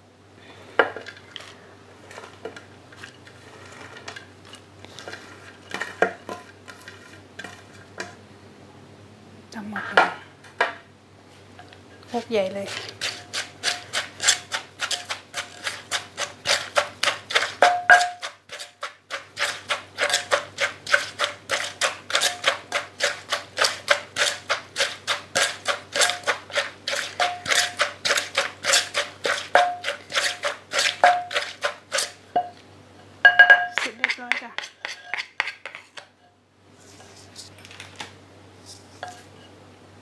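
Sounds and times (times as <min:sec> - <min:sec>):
pestle pounding in mortar: 0:12.7 - 0:32.5, 0:33.3 - 0:35.9.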